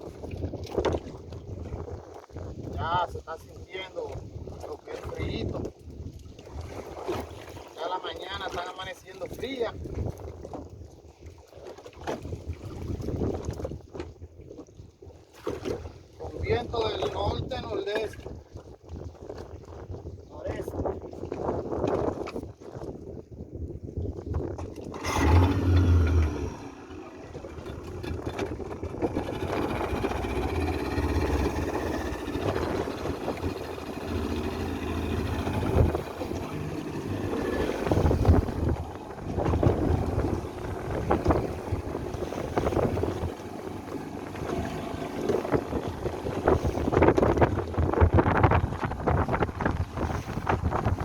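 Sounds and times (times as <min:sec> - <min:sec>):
wind buffeting microphone: 0:00.0 - 0:07.7, 0:08.4 - 0:51.0
boat motor running: 0:24.6 - 0:51.0.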